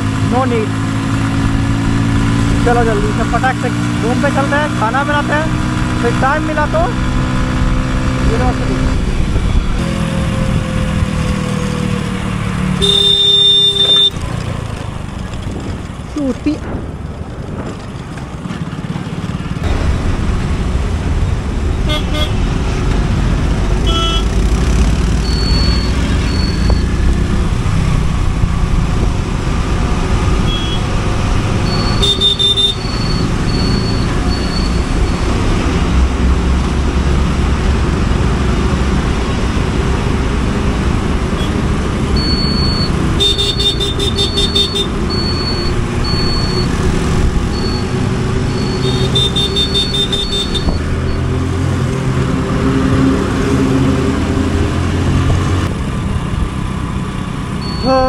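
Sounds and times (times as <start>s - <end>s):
motorcycle engine rumble: 0.0s - 58.0s
traffic: 0.0s - 58.0s
wind on microphone: 8.8s - 11.1s
short high horn toots: 12.8s - 14.2s.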